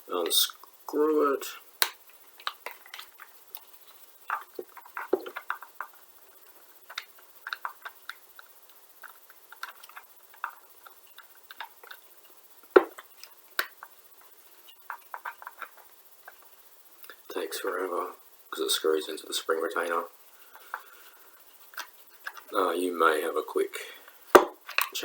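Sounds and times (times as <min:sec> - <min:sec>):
small metal and plastic clicks: 0:24.6 - 0:25.0.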